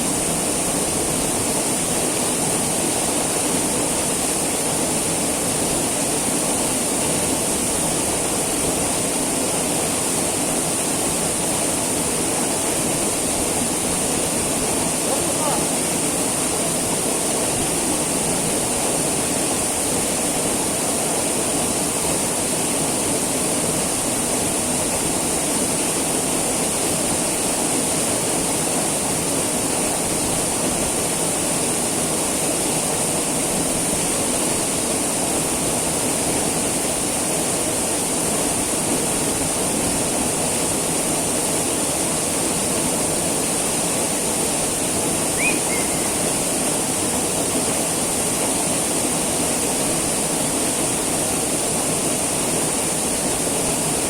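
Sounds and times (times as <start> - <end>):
high hiss: 42.6 - 54.0.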